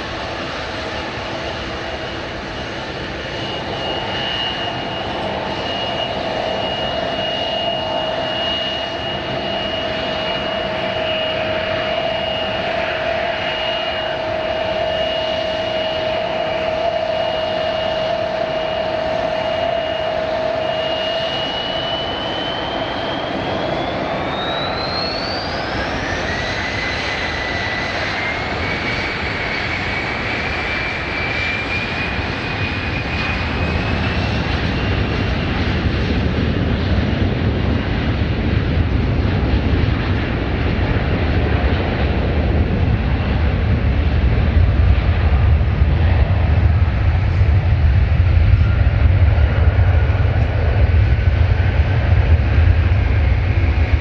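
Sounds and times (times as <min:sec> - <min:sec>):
jet engines whining: 0:00.0 - 0:54.0
rushing air noise: 0:42.1 - 0:54.0.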